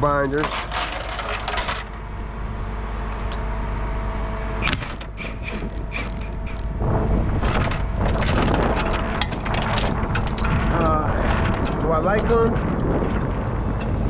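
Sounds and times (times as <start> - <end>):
chains clattering: 0.0 - 1.9, 4.6 - 6.8, 8.2 - 9.0
metallic chain clicks and creaks: 0.0 - 1.9, 4.6 - 6.8, 7.4 - 14.0
low engine hum: 1.5 - 14.0.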